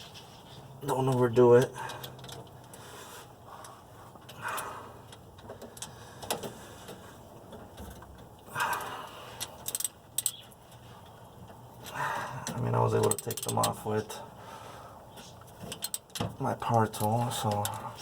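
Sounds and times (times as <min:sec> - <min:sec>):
hand tools clicking on bolts: 0:03.6 - 0:10.5, 0:11.5 - 0:13.8.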